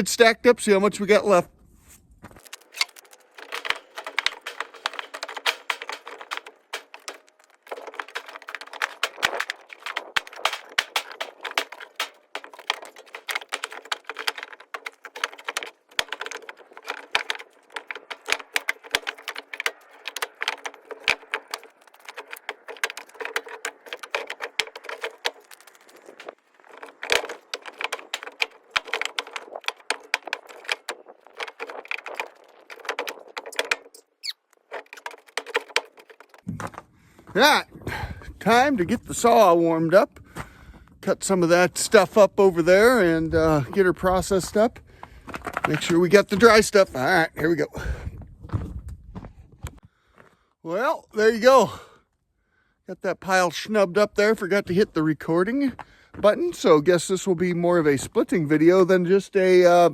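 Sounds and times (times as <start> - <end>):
firewood clattering as stacked: 1.8 - 50.3.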